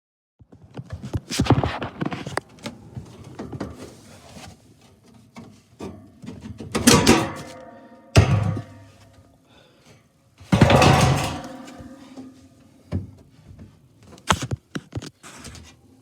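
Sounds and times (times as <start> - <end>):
hard parts knocking and clattering: 5.8 - 9.0, 10.5 - 13.1
loud ringing clang: 6.9 - 9.0, 10.6 - 12.4.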